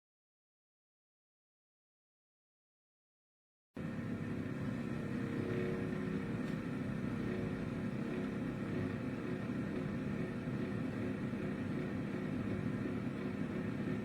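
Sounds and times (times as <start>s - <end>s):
air fryer fan whirring: 3.8s - 14.0s.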